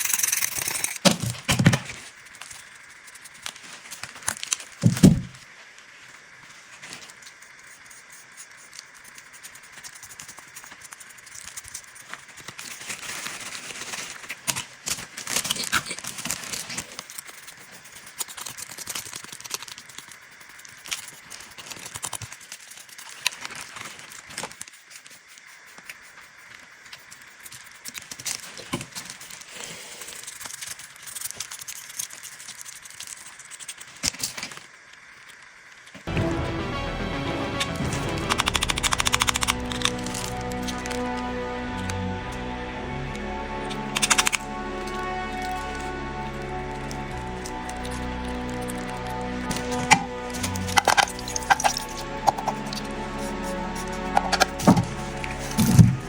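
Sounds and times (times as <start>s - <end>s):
small metal clicks and rattles: 0.0s - 4.8s, 9.1s - 25.2s.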